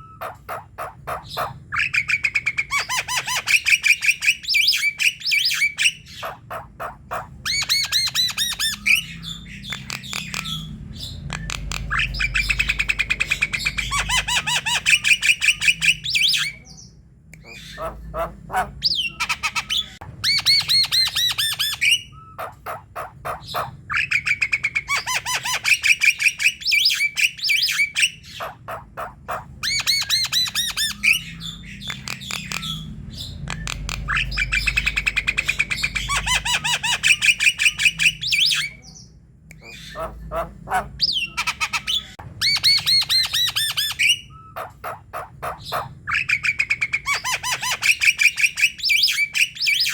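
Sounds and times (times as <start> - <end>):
bird singing harsh notes: 7.5 - 17.9.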